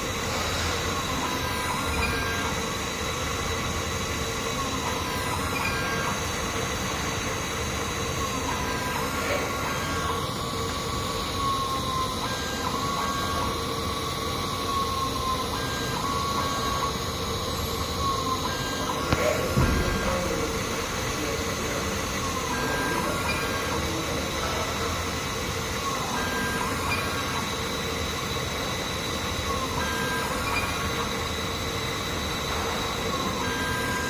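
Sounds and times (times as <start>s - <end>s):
machine hum with motor whine: 0.0s - 34.0s.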